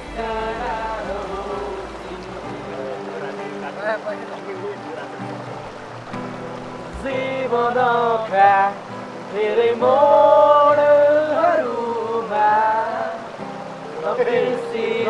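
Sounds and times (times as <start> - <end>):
gliding melody over accompaniment: 0.0 - 9.5.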